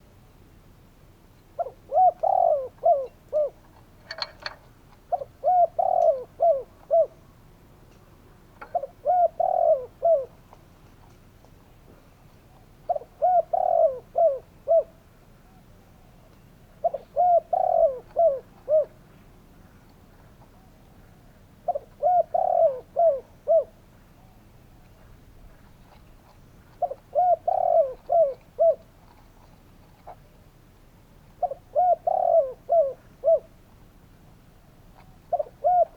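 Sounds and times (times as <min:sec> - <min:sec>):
dove cooing: 0:01.6 - 0:07.4, 0:08.6 - 0:10.5, 0:11.9 - 0:30.6, 0:31.2 - 0:33.6, 0:34.5 - 0:35.9.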